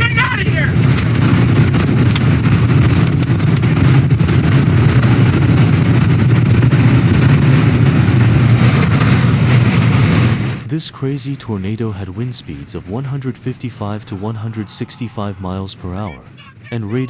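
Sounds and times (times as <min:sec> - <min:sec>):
strong wind rumbling: 0:00.0 - 0:17.0.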